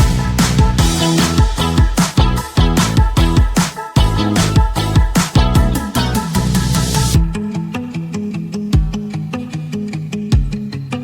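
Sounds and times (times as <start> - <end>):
kick drum thumping: 0.0 - 5.9, 7.2 - 7.4, 8.8 - 9.0, 10.3 - 10.6
upbeat music: 0.0 - 7.9.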